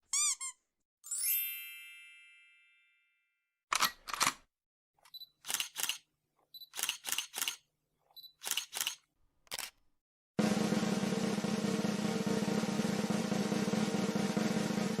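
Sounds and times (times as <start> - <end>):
camera shutter clicks: 6.7 - 7.6, 8.4 - 9.7
drum roll: 10.4 - 15.0.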